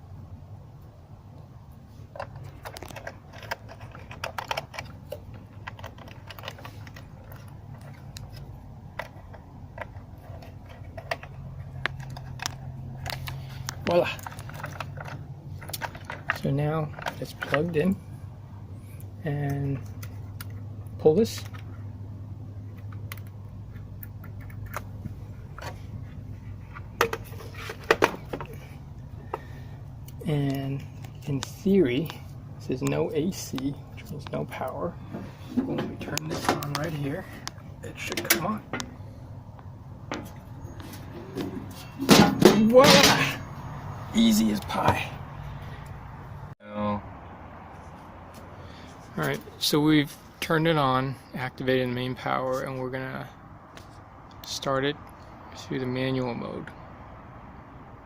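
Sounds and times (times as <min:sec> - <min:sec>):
low steady hum: 0:00.0 - 0:58.0
hands handling controller wiring: 0:01.4 - 0:18.0, 0:19.0 - 0:21.8, 0:22.7 - 0:43.5.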